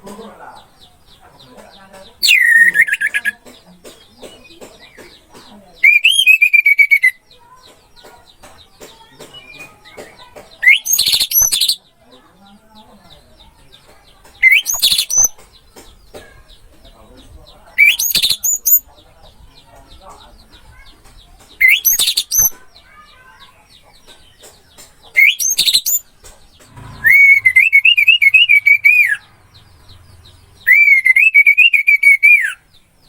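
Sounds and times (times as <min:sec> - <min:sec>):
faint chirping birds: 0:00.0 - 0:33.0
thrush singing whistled phrases: 0:02.2 - 0:03.4, 0:05.8 - 0:07.2, 0:10.6 - 0:11.8, 0:14.4 - 0:15.3, 0:17.8 - 0:18.8, 0:21.6 - 0:22.5, 0:25.2 - 0:26.0, 0:27.0 - 0:29.2, 0:30.6 - 0:32.6.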